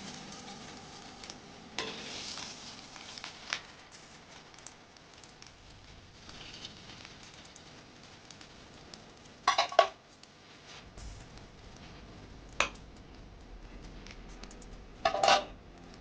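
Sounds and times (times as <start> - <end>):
meat sizzling in a pan: 0.0 - 12.0.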